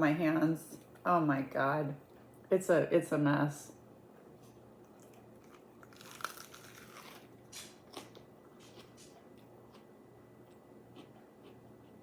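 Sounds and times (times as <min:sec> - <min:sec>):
chewing and mouth sounds: 0:04.8 - 0:12.0
crisp lettuce crunches: 0:05.0 - 0:09.1.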